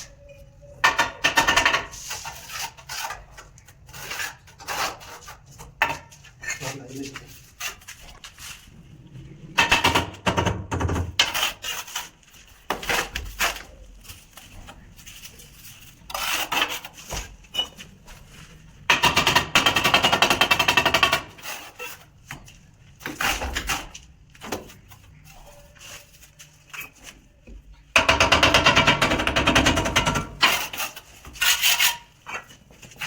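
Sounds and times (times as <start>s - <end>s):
rapid rattling knocks on concrete: 0.8s - 2.0s, 9.6s - 13.7s, 18.8s - 21.5s, 27.9s - 33.0s.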